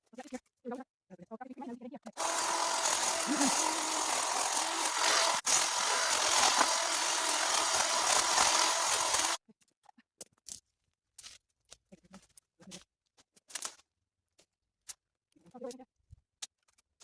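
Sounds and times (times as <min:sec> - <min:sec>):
small garden power tool running: 0:02.2 - 0:09.4.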